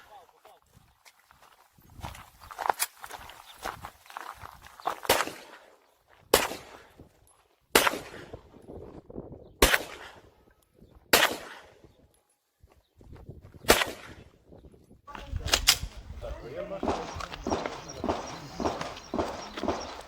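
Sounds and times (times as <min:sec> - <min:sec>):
pistol shots with echo: 0:05.1 - 0:05.7, 0:06.3 - 0:06.9, 0:07.7 - 0:08.4, 0:09.6 - 0:10.2, 0:11.1 - 0:11.7, 0:13.7 - 0:14.2, 0:15.1 - 0:20.0.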